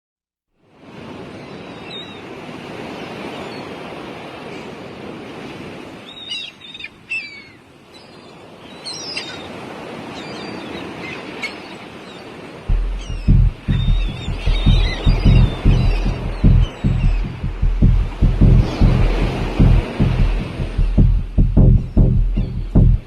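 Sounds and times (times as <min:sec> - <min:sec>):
sea surf washing on shore: 0:00.7 - 0:06.3, 0:07.3 - 0:23.0
birds calling: 0:12.7 - 0:20.1, 0:21.0 - 0:23.0.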